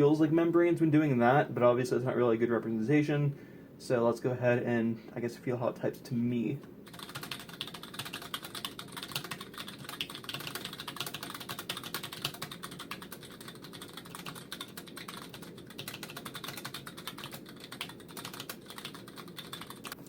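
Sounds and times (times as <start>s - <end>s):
fast mechanical keyboard typing: 6.8s - 20.0s.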